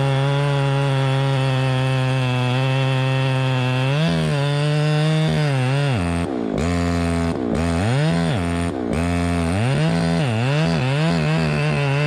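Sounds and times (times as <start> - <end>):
chainsaw running at high revs: 0.0 - 12.0.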